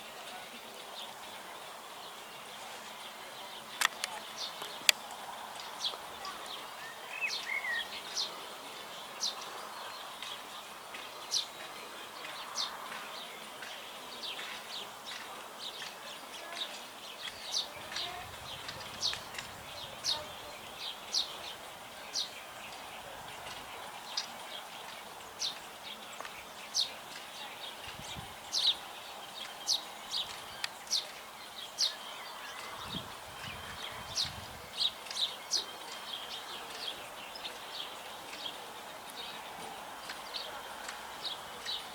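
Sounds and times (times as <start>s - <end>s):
sparrows chirping: 0.0s - 41.9s.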